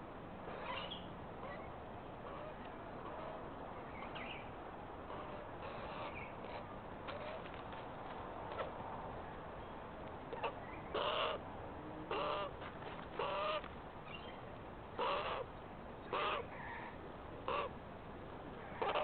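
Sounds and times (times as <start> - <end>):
magpie harsh calls: 5.1 - 7.4, 10.3 - 11.4, 12.1 - 12.5, 13.2 - 13.7, 15.0 - 15.5, 16.1 - 16.6, 17.4 - 17.7, 18.6 - 19.0.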